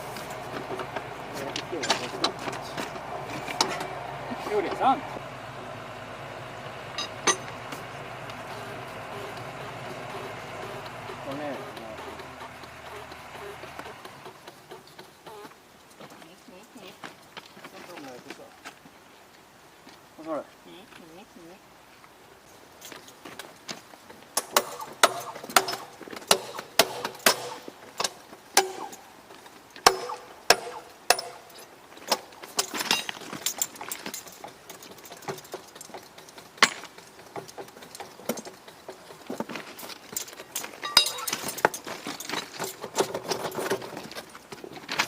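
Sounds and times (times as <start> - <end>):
sharp metallic knocks and clanks: 6.9 - 7.9, 24.4 - 29.1, 29.8 - 44.3.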